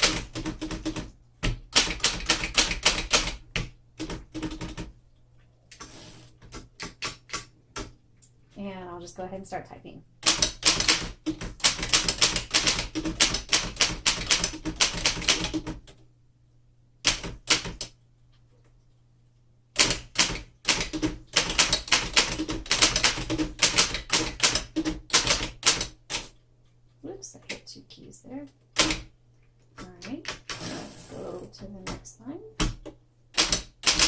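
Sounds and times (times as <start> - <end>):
manual typewriter typing: 0.0 - 4.9, 5.7 - 8.0, 10.2 - 16.0, 17.0 - 18.0, 19.8 - 26.4, 28.8 - 29.1, 29.8 - 32.1, 33.4 - 34.0.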